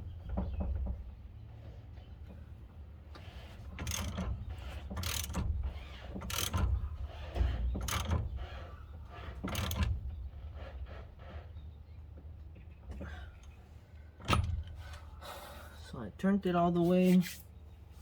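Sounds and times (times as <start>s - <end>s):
ratchet wrench clicking: 3.8s - 4.2s, 5.0s - 6.6s.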